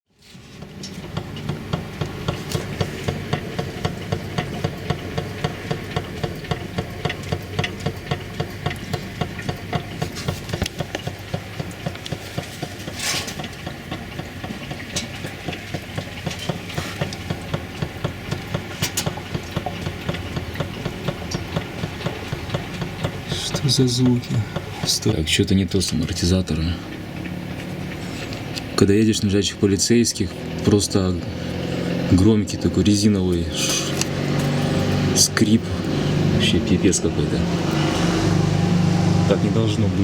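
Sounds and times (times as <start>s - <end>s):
engine running: 0.1s - 40.0s
shock absorbers clicking and creaking: 0.2s - 25.1s.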